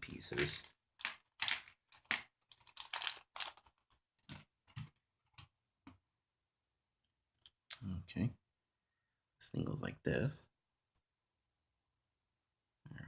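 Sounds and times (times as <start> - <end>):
plastic building blocks clicking: 0.4 - 3.9.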